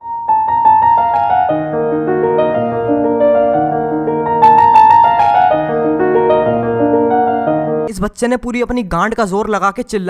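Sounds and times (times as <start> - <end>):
gentle piano melody: 0.0 - 7.9.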